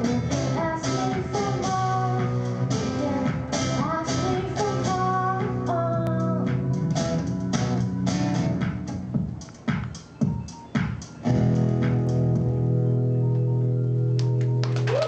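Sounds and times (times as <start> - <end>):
woman singing: 0.0 - 6.5
pop-rock band playing: 0.0 - 13.5.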